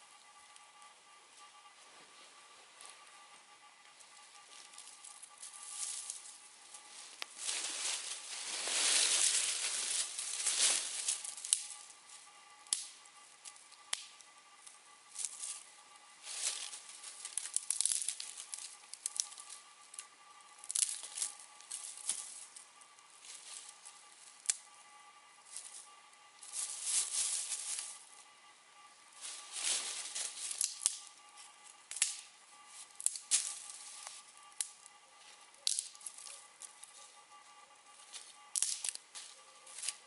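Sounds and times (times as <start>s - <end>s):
campfire crackling and popping: 30.6s - 31.0s, 31.9s - 32.2s, 33.0s - 33.4s, 38.5s - 39.0s.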